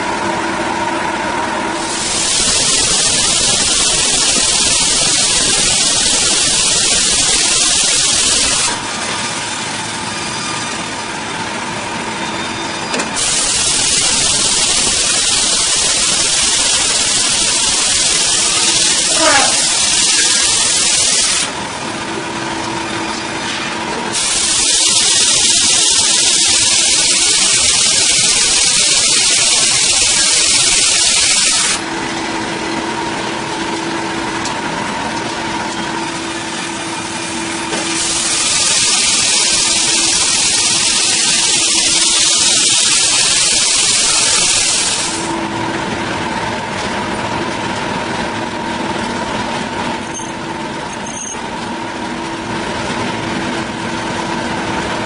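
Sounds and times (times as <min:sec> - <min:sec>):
sawmill machinery humming: 0:00.0 - 0:55.0
loud hiss: 0:01.8 - 0:09.8, 0:13.2 - 0:21.6, 0:24.1 - 0:31.8, 0:37.4 - 0:45.4.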